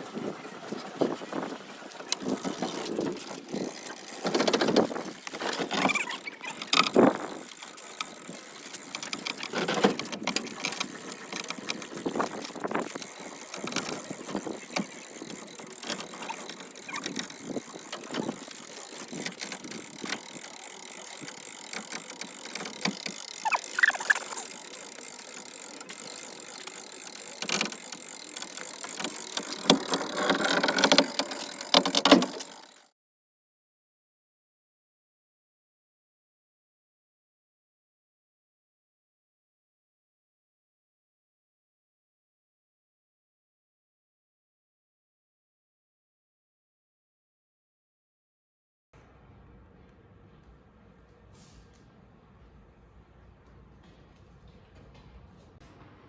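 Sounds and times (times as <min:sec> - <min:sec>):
brief squeak: 0:05.7 - 0:06.7, 0:16.1 - 0:17.2, 0:23.4 - 0:24.4.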